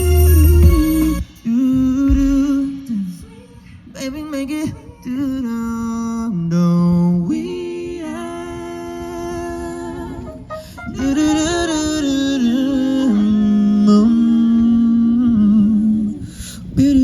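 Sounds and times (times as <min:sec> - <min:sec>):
person singing long wordless notes: 0:00.0 - 0:16.2.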